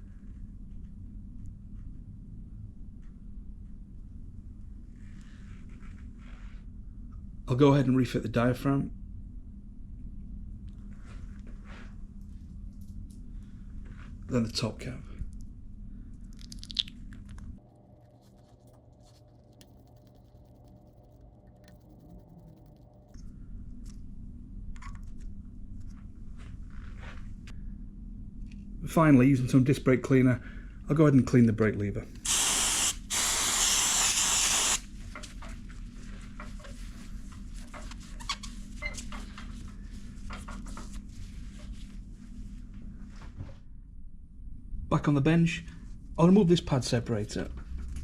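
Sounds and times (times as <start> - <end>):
faint scattered ticks: 17.7 - 23.2
small clicks and scrapes of cap: 17.8 - 23.2
aerosol spray hissing: 32.2 - 34.8.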